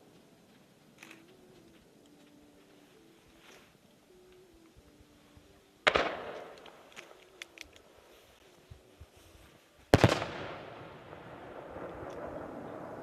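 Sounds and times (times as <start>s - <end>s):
fireworks bangs echoing: 5.9s - 6.6s, 9.9s - 13.0s
fireworks crackles: 9.9s - 13.0s.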